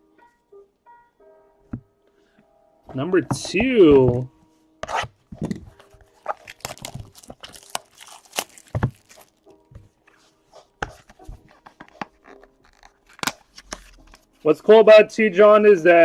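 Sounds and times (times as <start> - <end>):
cards rustling and scraping: 3.2 - 9.4, 10.1 - 14.3
packaging crinkling: 5.4 - 9.5, 11.0 - 14.3.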